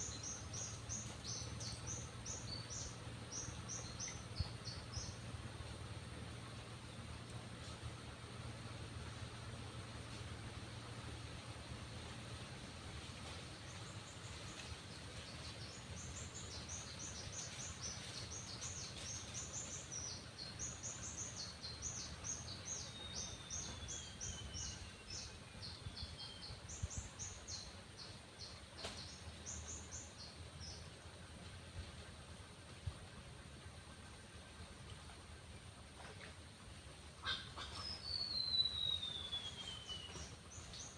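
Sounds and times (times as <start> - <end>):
bird chirping: 37.2 - 40.9.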